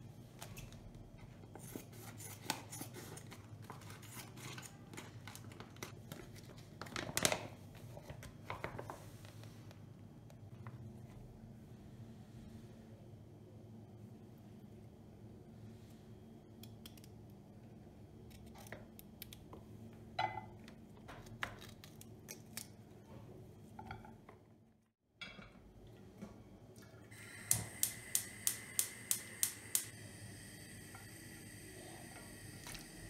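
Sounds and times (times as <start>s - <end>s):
utensils clicking and tapping: 27.4s - 29.9s.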